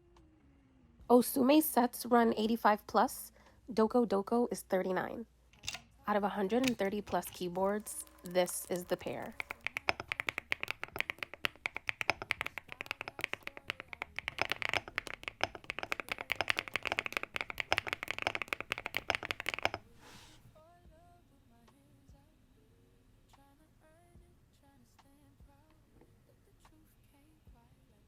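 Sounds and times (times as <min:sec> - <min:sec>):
fast keyboard typing: 0:06.5 - 0:19.9.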